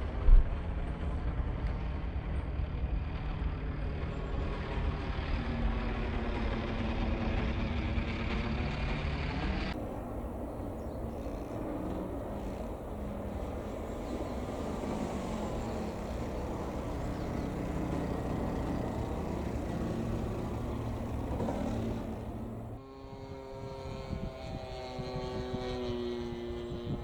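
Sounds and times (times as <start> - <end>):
vehicle engine rumble: 9.6 - 27.0.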